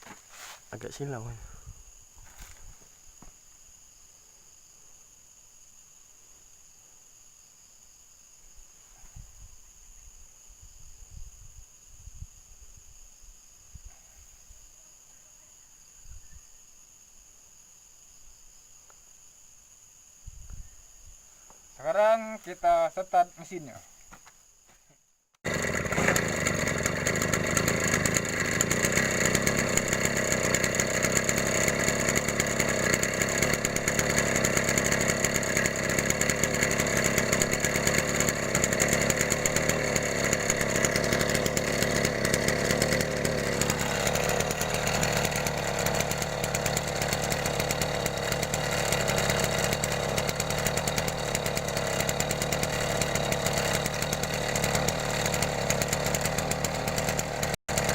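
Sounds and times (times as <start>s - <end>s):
two-stroke engine running: 25.4s - 57.9s.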